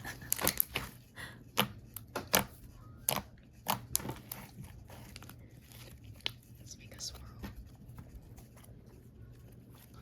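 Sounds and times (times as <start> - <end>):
slime squishing with wet pops: 0.0 - 6.5.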